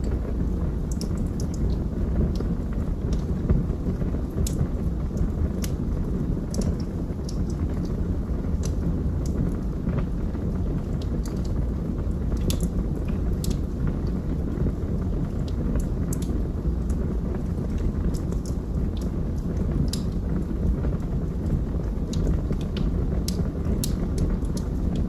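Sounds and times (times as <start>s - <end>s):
fire crackling and popping: 0.0s - 25.0s
low rumble of flames: 0.0s - 25.0s.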